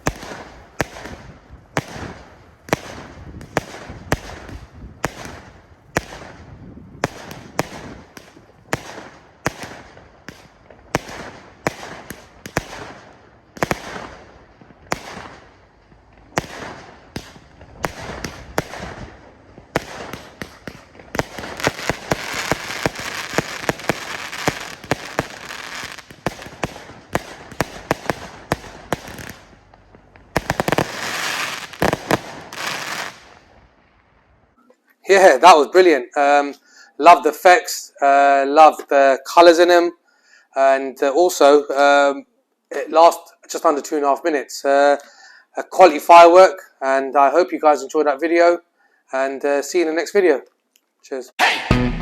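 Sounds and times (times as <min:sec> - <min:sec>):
firework cake shots bursting: 0:00.0 - 0:06.4, 0:07.0 - 0:14.2, 0:16.3 - 0:29.7, 0:30.3 - 0:33.3
dense firework crackling: 0:00.0 - 0:34.6.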